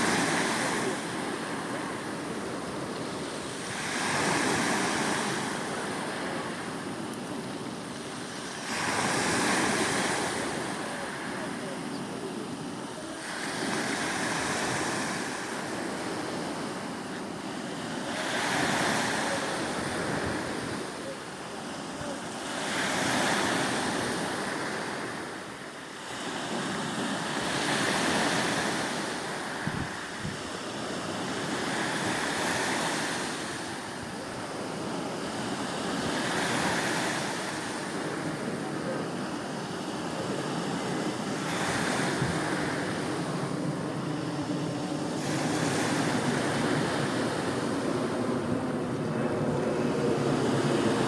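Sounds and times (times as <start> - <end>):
sea waves washing onto shore: 0.0 - 51.0
wind buffeting microphone: 18.0 - 22.1, 26.5 - 51.0.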